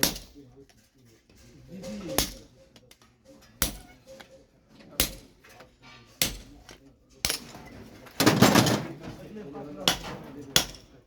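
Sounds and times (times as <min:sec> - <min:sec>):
hammer striking steel on anvil: 0:00.0 - 0:00.4, 0:02.2 - 0:02.5, 0:03.6 - 0:03.9, 0:05.0 - 0:05.4, 0:06.2 - 0:07.4, 0:09.8 - 0:10.9.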